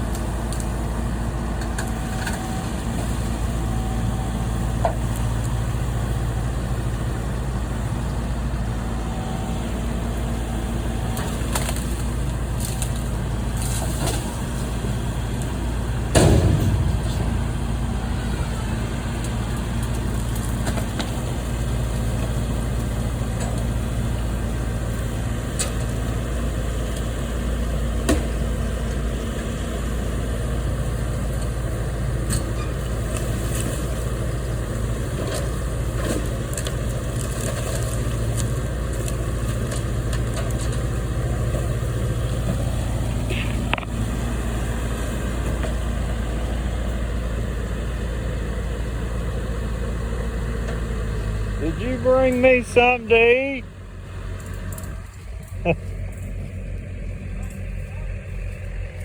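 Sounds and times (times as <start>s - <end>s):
large engine humming: 0.0s - 59.0s
loud crash: 16.1s - 19.3s.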